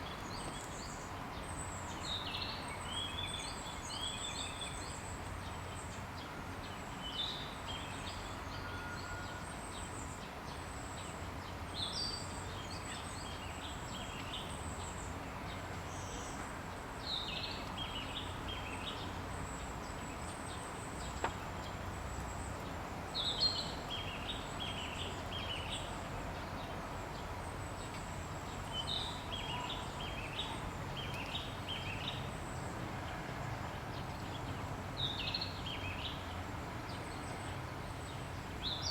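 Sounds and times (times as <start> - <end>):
outdoor background noise: 0.0 - 38.9
bird singing: 35.0 - 36.3.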